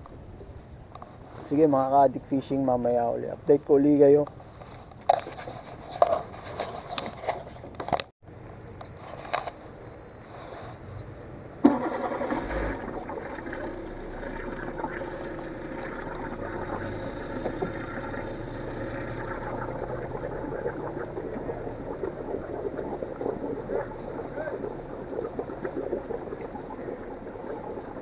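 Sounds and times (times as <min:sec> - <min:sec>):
boat motor running: 0:12.3 - 0:28.0.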